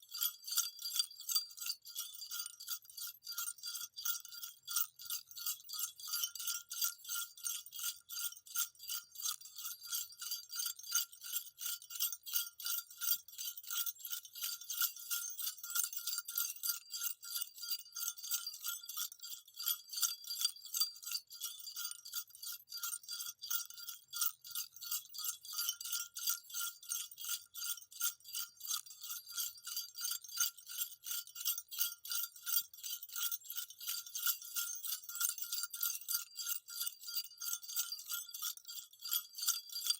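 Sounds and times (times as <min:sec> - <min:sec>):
jingle bells shaking: 0:23.2 - 0:39.9.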